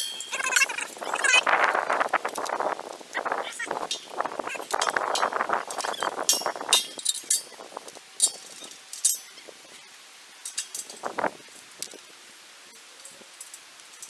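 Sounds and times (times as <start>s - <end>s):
light metallic clinks: 0.0s - 1.1s, 4.7s - 9.5s, 10.4s - 11.1s.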